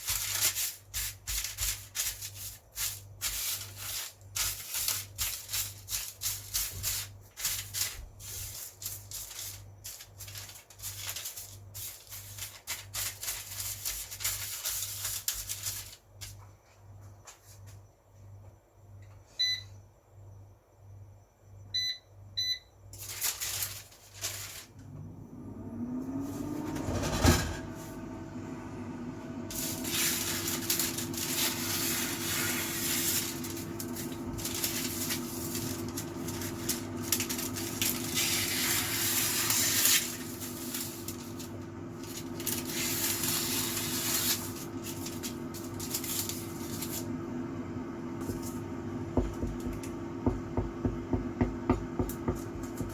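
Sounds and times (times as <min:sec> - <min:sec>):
air fryer fan whine and hum: 0:00.0 - 0:52.9
air fryer control panel beeps: 0:19.4 - 0:19.8, 0:21.7 - 0:22.8, 0:49.0 - 0:52.0
knock: 0:49.2 - 0:49.6, 0:50.3 - 0:52.4.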